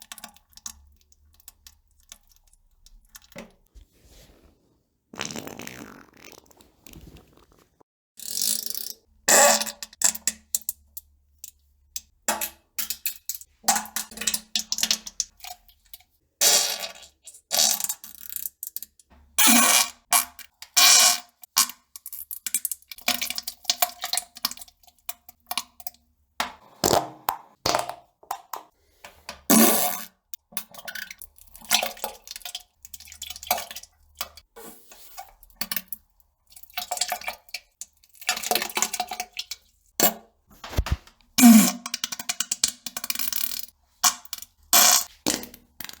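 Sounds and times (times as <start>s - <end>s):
farting and splattering sounds: 5.2s - 7.8s, 40.6s - 42.0s, 44.8s - 45.5s.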